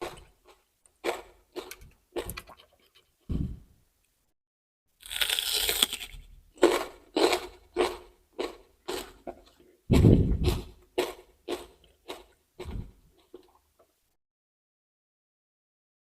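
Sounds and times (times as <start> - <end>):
crunchy chewing of vegetables: 0.0 - 3.0, 5.0 - 13.9.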